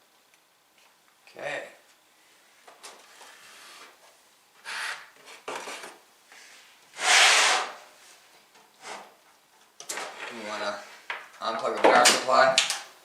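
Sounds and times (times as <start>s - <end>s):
rubbing and scraping: 5.2s - 9.2s.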